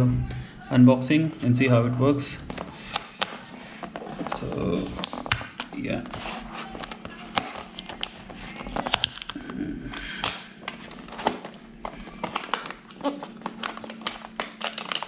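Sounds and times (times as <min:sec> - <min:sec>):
faint steady hum: 0:00.0 - 0:15.0
box being handled and opened: 0:02.5 - 0:09.4, 0:10.7 - 0:15.0.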